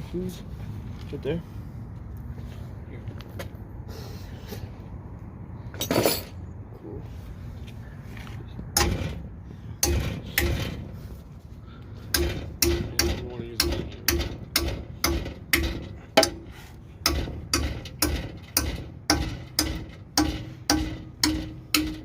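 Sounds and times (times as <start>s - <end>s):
sharp ringing metallic knocks: 8.8s - 11.2s, 12.0s - 22.0s.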